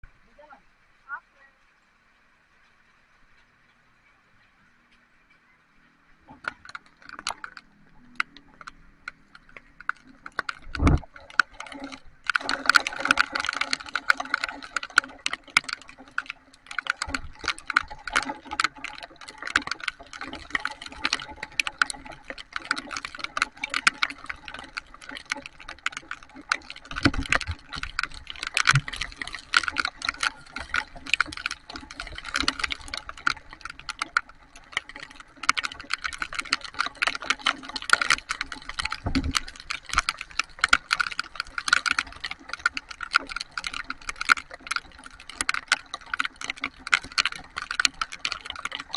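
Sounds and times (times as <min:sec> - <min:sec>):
heavy rain patter: 0:06.1 - 0:48.9.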